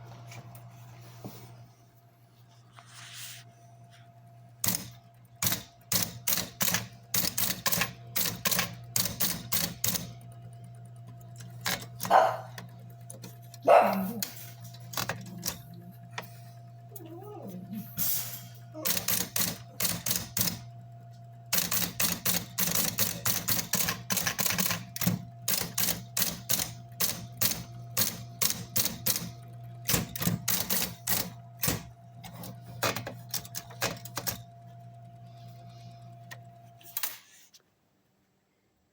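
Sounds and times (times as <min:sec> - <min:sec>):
electric typewriter motor humming: 0:04.5 - 0:37.5
typewriter key strikes: 0:04.6 - 0:10.1, 0:18.9 - 0:20.6, 0:21.5 - 0:31.9.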